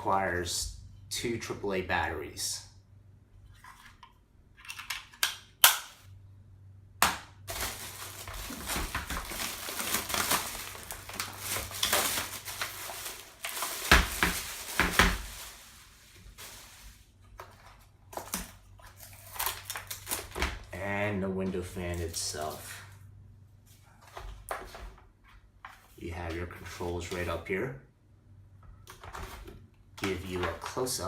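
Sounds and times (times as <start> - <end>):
packaging clicks and knocks: 7.0 - 15.6
plastic packaging crinkling: 7.4 - 20.7.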